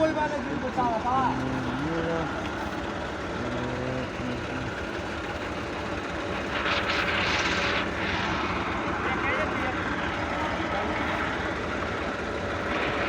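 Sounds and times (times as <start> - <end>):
combine harvester engine running: 0.0 - 13.0
rushing noise: 4.8 - 13.0.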